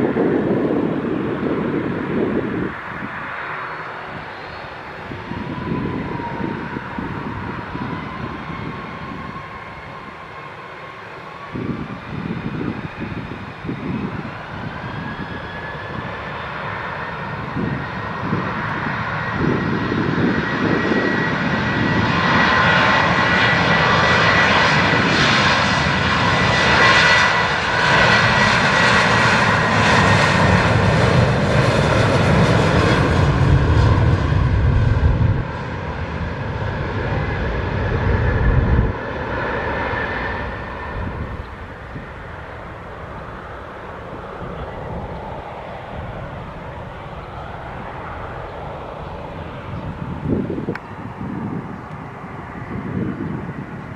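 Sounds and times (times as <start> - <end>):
jet airliner passing: 0.0 - 53.9
low jet rumble: 0.0 - 53.9.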